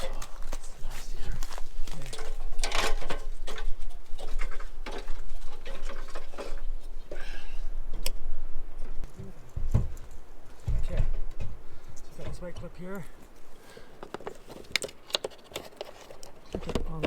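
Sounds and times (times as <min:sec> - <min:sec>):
plastic clips and bulbs clattering: 0:02.1 - 0:06.6, 0:14.0 - 0:17.0.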